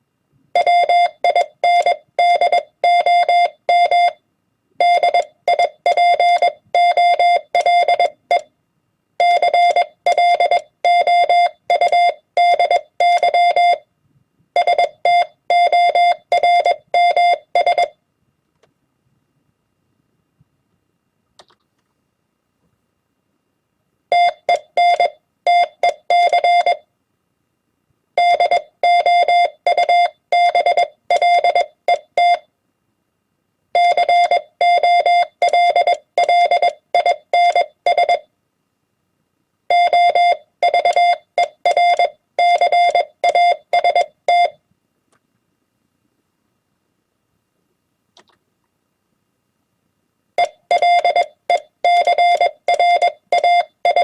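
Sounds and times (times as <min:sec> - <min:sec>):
morse code tone: 0:33.8 - 0:38.2, 0:39.7 - 0:44.6, 0:50.4 - 0:54.0.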